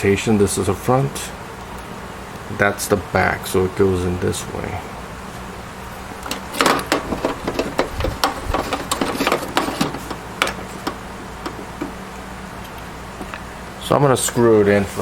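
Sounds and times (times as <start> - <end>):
hard drive sliding into metal bay: 6.2 - 12.2.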